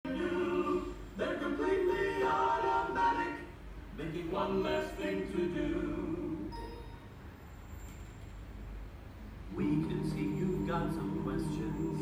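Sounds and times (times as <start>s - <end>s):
voices singing long held notes: 0.1s - 6.7s, 9.5s - 12.0s.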